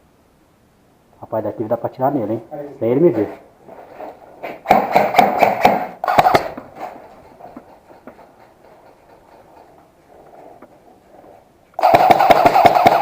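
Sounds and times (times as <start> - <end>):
airsoft rifle shots: 4.5 - 7.5, 11.8 - 13.0.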